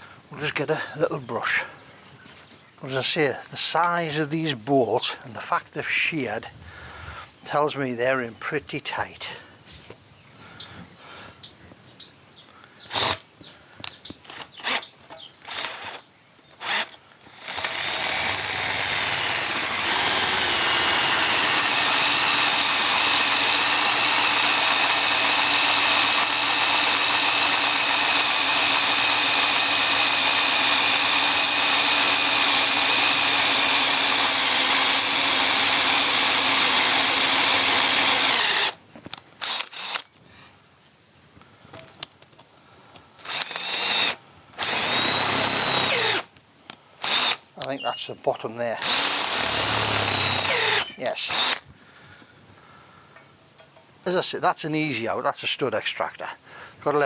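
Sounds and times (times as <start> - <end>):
electric drill whining: 12.9 - 13.3, 14.2 - 38.8, 39.4 - 40.2, 43.2 - 46.3, 47.0 - 47.8, 48.8 - 51.8.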